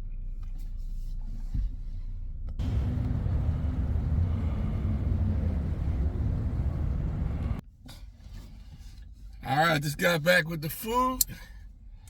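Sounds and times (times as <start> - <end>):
car engine rumbling: 2.6 - 7.6.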